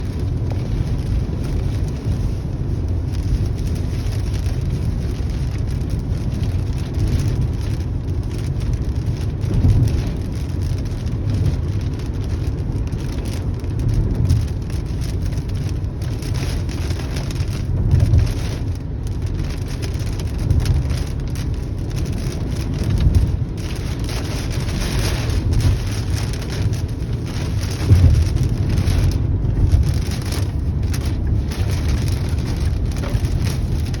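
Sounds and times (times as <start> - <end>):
steady rain: 0.0 - 34.0
thunder rumbling: 16.0 - 34.0.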